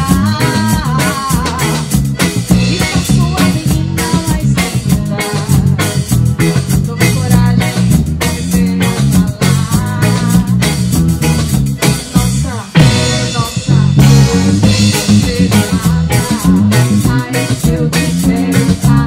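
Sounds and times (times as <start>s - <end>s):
live band playing upbeat music: 0.0s - 19.0s.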